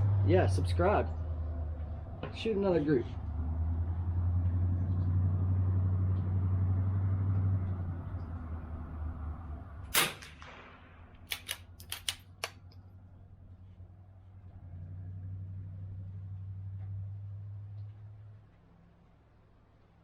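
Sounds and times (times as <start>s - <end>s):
steady low rumble: 0.0s - 20.0s
rifle shot with echo: 9.9s - 11.7s
sharp clicks: 10.0s - 12.9s.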